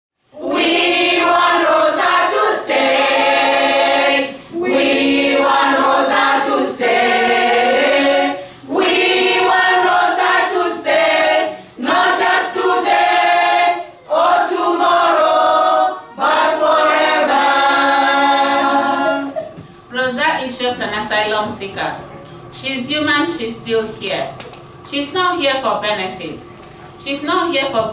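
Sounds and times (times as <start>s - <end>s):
women's choir singing: 0.3s - 19.6s
singers breathing: 8.4s - 8.7s.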